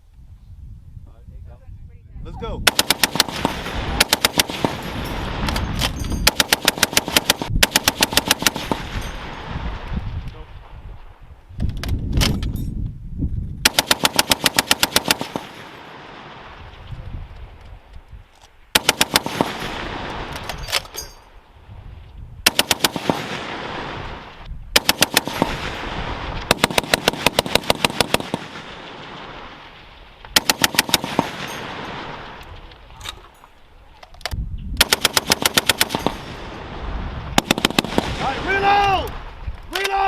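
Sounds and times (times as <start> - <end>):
single gunshots: 2.6 - 9.7, 22.4 - 29.4, 30.4 - 32.4, 37.4 - 38.6.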